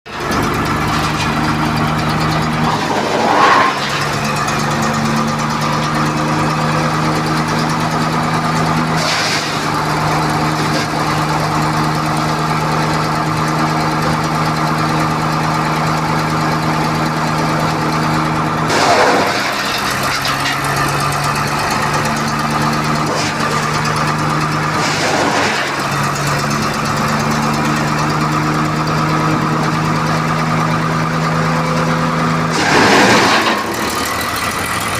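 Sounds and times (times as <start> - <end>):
small engine running: 0.1 - 34.9.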